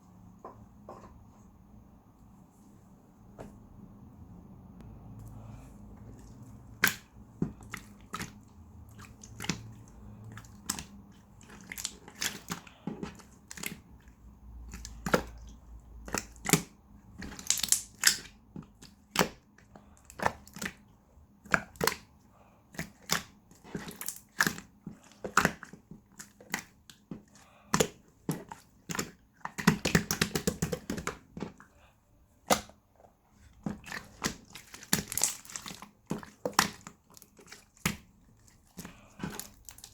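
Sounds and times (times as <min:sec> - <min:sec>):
slime crackling: 0:16.0 - 0:18.3, 0:33.8 - 0:39.9.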